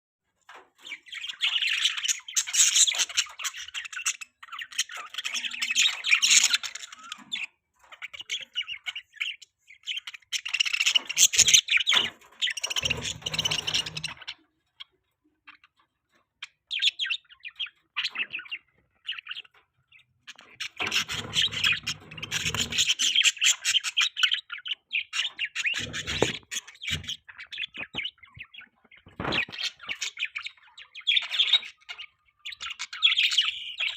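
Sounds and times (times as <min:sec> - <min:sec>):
budgerigars chirping and chattering: 0:00.5 - 0:33.9.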